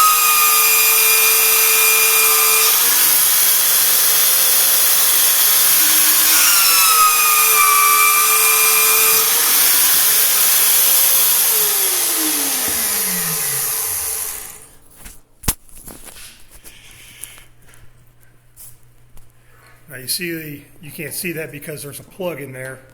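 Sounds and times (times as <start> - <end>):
drill cutting through steel: 0.0 - 14.8.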